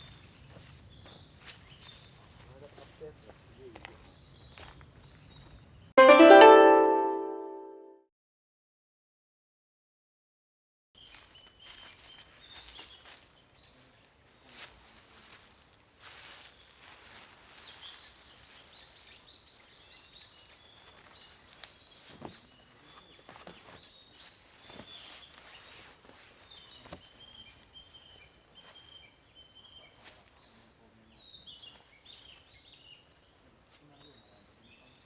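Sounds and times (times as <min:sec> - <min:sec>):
songbirds chirping and trilling: 0:00.0 - 0:02.4, 0:16.3 - 0:35.0.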